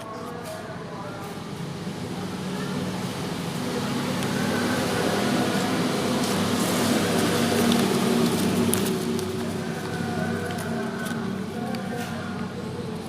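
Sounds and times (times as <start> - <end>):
engine hum: 0.2 - 13.0.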